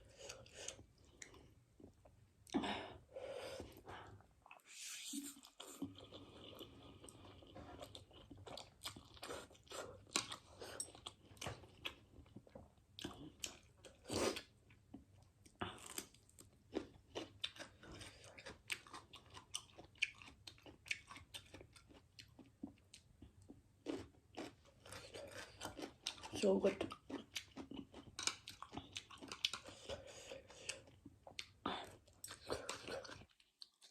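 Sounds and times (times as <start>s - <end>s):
wet chewing and lip smacks: 5.3s - 33.9s.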